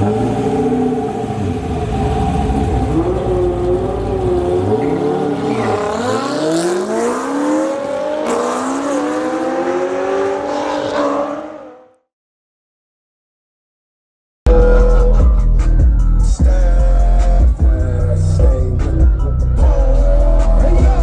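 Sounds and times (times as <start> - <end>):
car engines revving and accelerating: 0.0 - 12.0.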